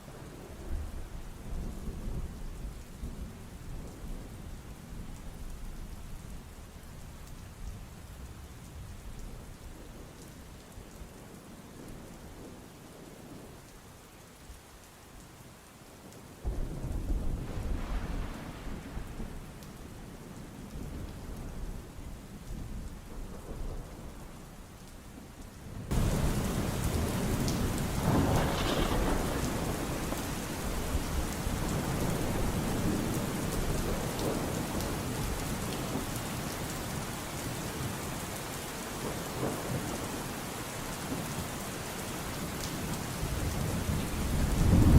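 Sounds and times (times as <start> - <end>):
steady rain: 0.0 - 44.9
rolling thunder: 16.5 - 24.3, 25.9 - 36.1, 43.3 - 44.9.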